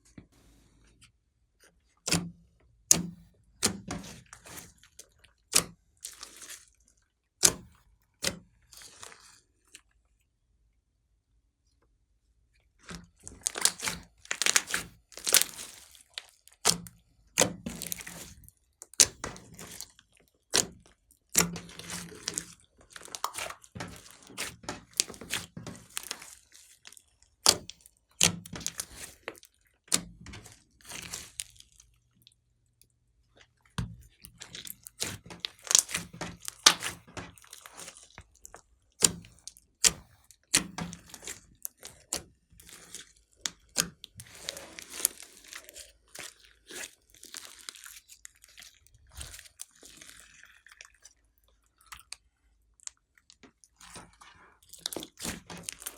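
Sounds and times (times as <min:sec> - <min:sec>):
slime squeezed by hand: 0:13.4 - 0:16.8, 0:20.5 - 0:27.8, 0:34.3 - 0:38.2.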